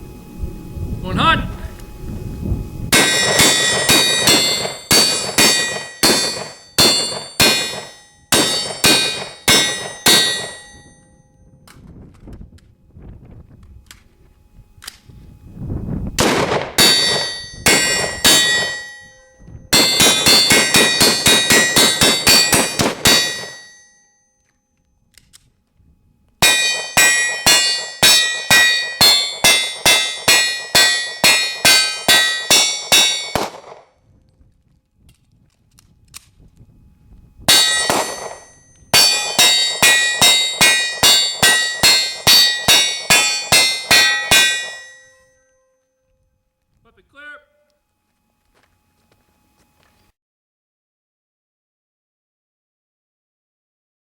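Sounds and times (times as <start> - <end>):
ringing tone: 2.0 - 11.7, 16.8 - 25.1, 26.4 - 33.4, 37.5 - 46.4
rapid gunshots: 16.2 - 17.2.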